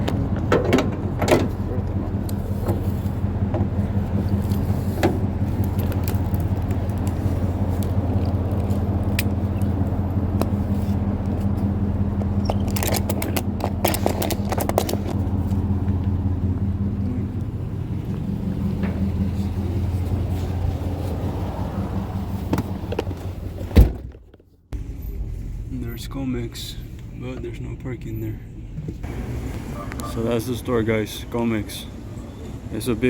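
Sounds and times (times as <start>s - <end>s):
car engine humming: 0.0s - 33.0s
rattling clicks: 11.2s - 16.2s.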